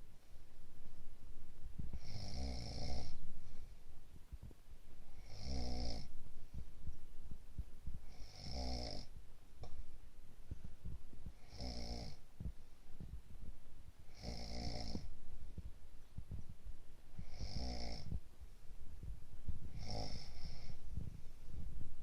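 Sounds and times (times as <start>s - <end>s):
quiet breathing: 0.0s - 22.0s
rasping snores: 2.0s - 3.2s, 5.2s - 6.1s, 8.1s - 9.1s, 11.4s - 12.2s, 14.1s - 15.1s, 17.2s - 18.1s, 19.7s - 20.8s.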